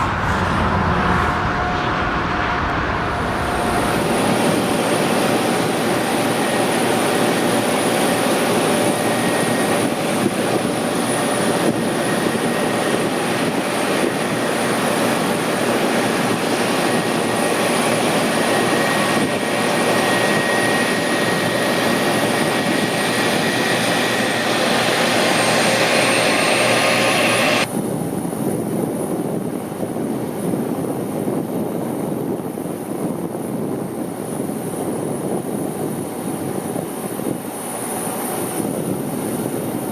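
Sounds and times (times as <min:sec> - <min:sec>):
faint engine whine: 0:00.0 - 0:30.2
airplane engines roaring: 0:00.0 - 0:39.9.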